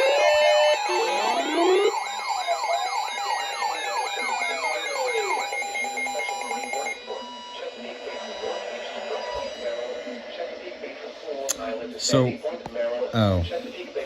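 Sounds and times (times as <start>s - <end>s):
fast warbling tones: 0.0s - 7.0s
steady beeps: 0.0s - 10.4s
siren-like alarm sweeps: 0.0s - 10.7s.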